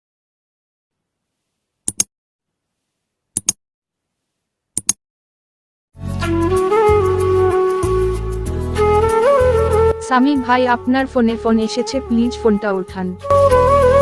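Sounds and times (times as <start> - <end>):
sharp double clicks: 1.9 - 2.1, 3.4 - 3.6, 4.8 - 5.0.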